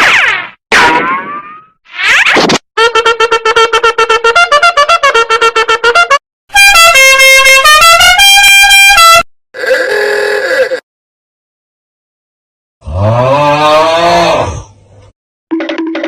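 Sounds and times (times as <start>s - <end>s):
brassy horn-like tune: 2.8s - 9.3s
stuttering buzzy horn notes: 2.8s - 9.3s.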